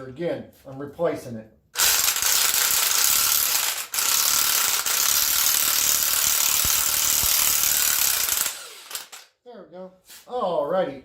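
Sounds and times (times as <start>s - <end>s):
impact wrench rattling: 1.8s - 9.3s.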